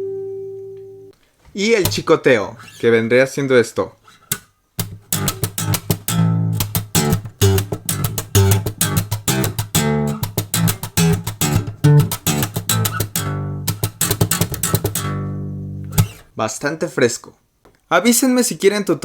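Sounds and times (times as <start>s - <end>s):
slap bass playing: 4.8s - 16.3s.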